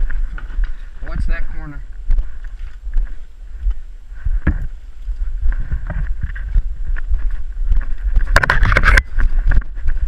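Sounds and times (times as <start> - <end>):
wind buffeting microphone: 0.0 - 10.0
footsteps knocks and scuffs: 2.0 - 10.0.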